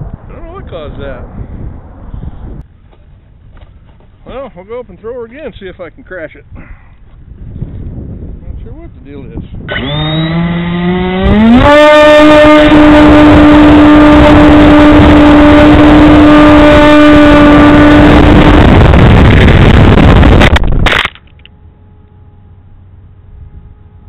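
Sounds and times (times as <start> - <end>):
wind rush: 0.0 - 3.5, 6.4 - 11.8, 12.4 - 21.1
electric model plane motor whining: 9.7 - 19.7
faint steady whine: 17.6 - 24.0.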